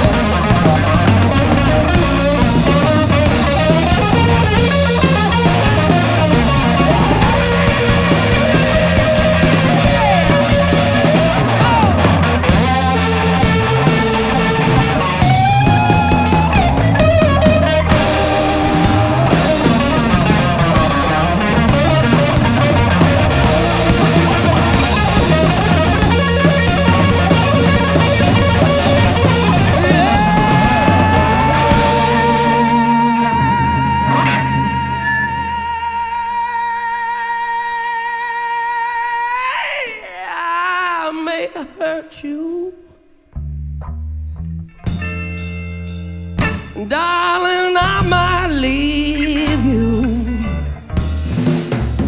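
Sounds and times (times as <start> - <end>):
lead guitar bent notes: 0.0 - 36.0, 43.8 - 47.2
drum kit: 0.0 - 36.2, 44.7 - 52.0
bass: 0.0 - 39.9, 42.5 - 52.0.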